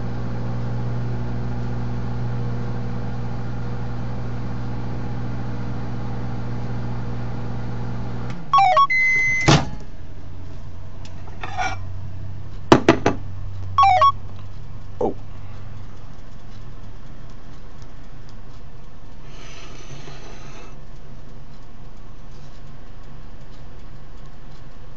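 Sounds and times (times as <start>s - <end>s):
microwave oven humming: 0.0s - 24.9s
electronic beeps: 8.5s - 9.5s, 13.8s - 14.2s
sharp clicks: 13.5s - 19.8s, 20.7s - 24.9s.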